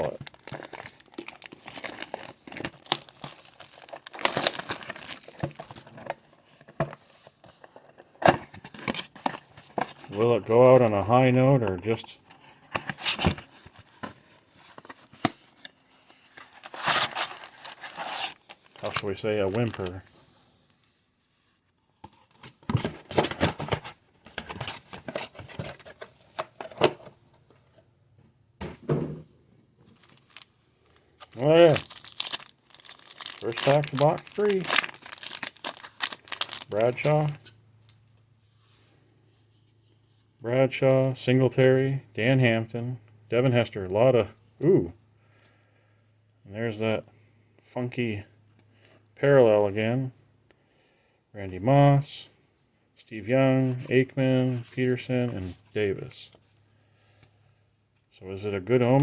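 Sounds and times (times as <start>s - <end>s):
plastic packaging crinkling: 0.0s - 5.9s, 16.5s - 20.0s, 29.9s - 37.5s
cardboard rustling: 0.0s - 11.2s, 11.8s - 20.3s, 21.2s - 27.8s, 29.9s - 37.5s
cardboard box torn open: 16.5s - 18.6s.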